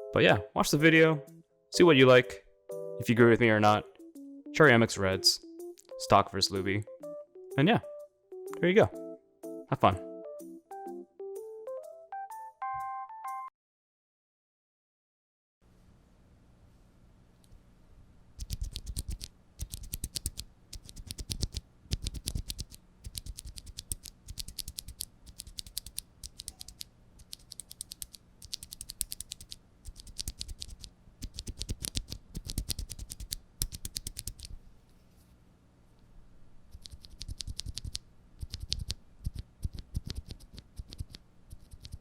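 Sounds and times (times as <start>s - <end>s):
mechanical keyboard typing: 18.4s - 34.5s, 36.7s - 42.0s.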